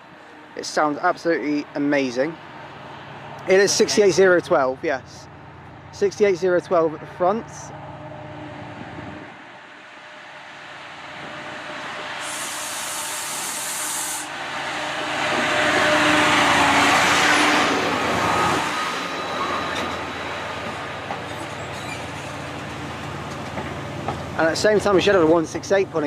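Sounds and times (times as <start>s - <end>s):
locomotive engine drone: 1.7s - 12.8s
air hiss burst: 12.2s - 14.3s.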